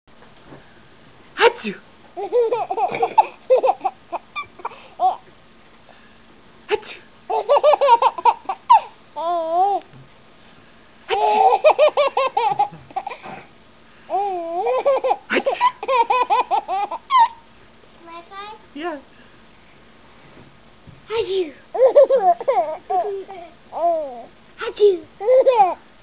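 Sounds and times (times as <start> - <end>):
baby laughing: 2.2 - 5.2, 6.7 - 9.8, 11.1 - 13.4, 14.1 - 17.4, 21.7 - 24.3, 25.2 - 25.8.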